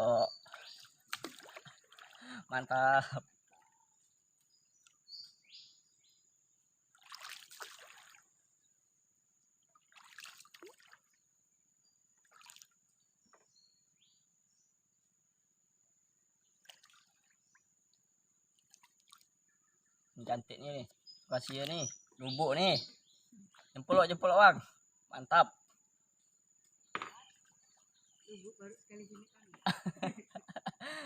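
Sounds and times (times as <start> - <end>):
faint bird chirps: 0.0 - 1.5, 2.2 - 6.4, 18.6 - 30.8
water splashing and trickling: 0.0 - 5.4, 6.6 - 13.6, 16.2 - 19.6, 20.2 - 22.7, 23.4 - 24.1, 27.0 - 28.6.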